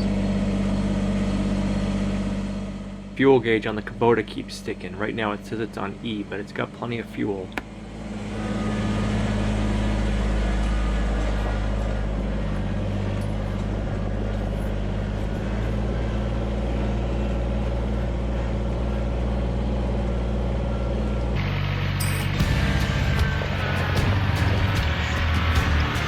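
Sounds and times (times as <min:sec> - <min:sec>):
tractor diesel engine running: 0:00.0 - 0:26.0.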